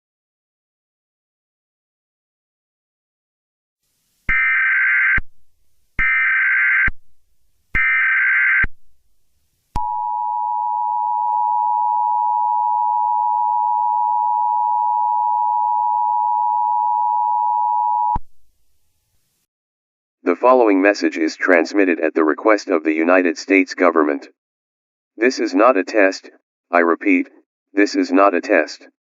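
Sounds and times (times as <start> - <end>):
data burst tones: 4.3 - 5.3, 6.0 - 7.0, 7.7 - 8.8
two-tone attention signal: 9.8 - 18.2.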